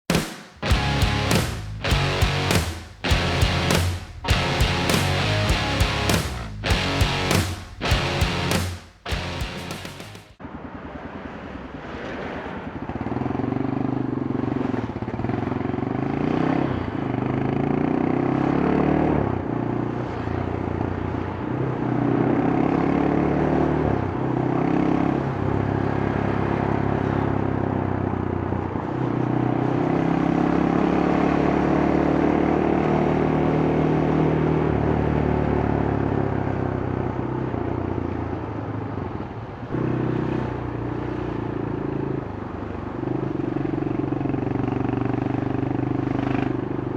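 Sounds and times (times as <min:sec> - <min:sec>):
motorcycle engine revving: 0:00.1 - 0:10.3.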